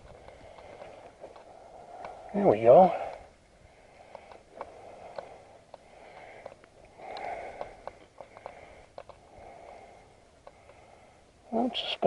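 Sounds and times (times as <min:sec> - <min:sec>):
handling clicks and rustles: 0:00.0 - 0:02.2, 0:04.0 - 0:09.8
faint breathing: 0:00.0 - 0:11.6.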